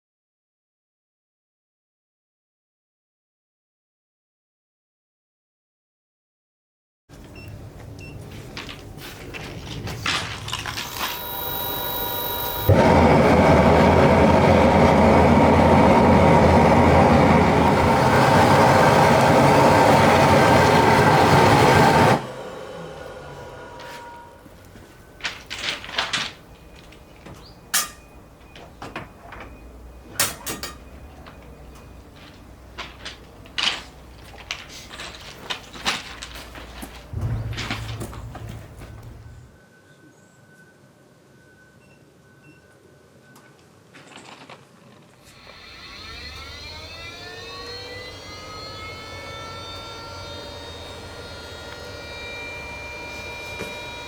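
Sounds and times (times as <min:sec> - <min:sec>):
machine whine: 0:10.5 - 0:25.8, 0:45.2 - 0:54.0
low hum: 0:10.8 - 0:25.3, 0:37.1 - 0:39.6, 0:45.4 - 0:54.0
low steady rumble: 0:37.1 - 0:39.6.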